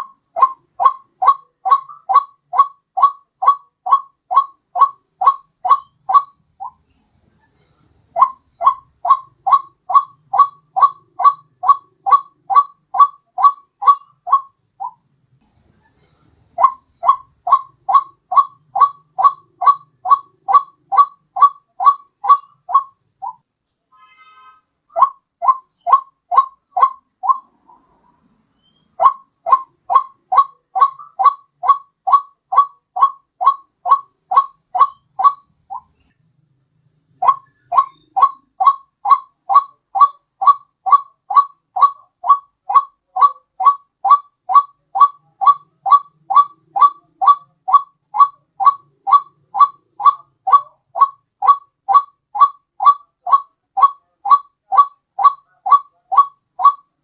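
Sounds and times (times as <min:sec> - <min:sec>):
waterhen loud short calls: 0:28.6 - 0:35.9, 0:37.2 - 0:56.8.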